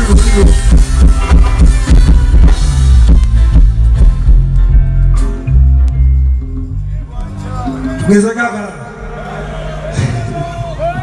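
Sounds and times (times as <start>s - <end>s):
deep bass line: 0.0s - 8.2s.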